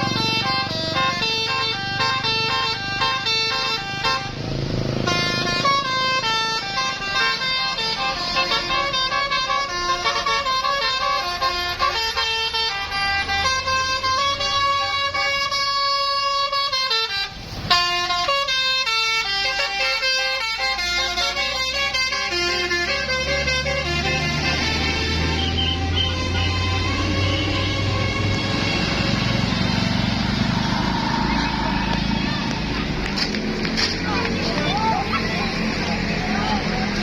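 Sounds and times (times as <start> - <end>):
musical bus horn melody: 0.0 - 32.4
bus engine running: 0.0 - 37.0.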